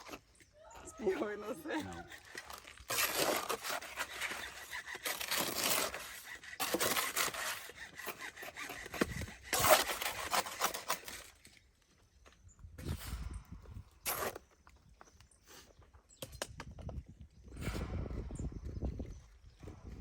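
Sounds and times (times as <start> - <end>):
shovel scraping through mortar: 0.0 - 11.5, 14.0 - 14.6.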